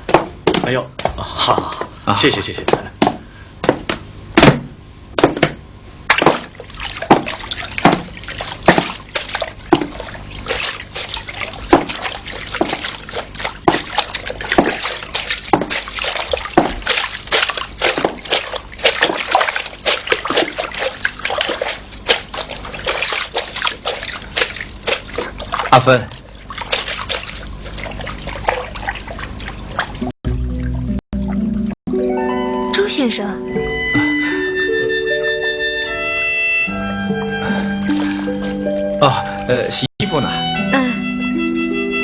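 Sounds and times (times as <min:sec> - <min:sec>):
water splashing and sloshing: 0:05.2 - 0:31.8, 0:37.0 - 0:39.4.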